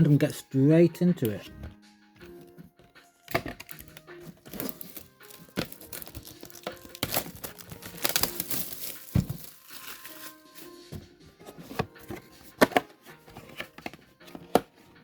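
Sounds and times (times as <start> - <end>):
quiet background music: 0.0 - 15.0
plastic wrapping crinkling and tearing: 3.4 - 10.6.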